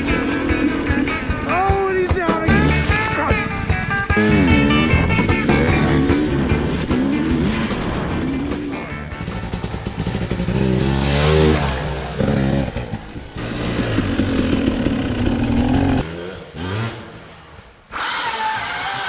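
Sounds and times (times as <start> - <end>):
small engine revving: 2.5 - 17.2, 17.9 - 19.0
steady motor: 17.9 - 19.0.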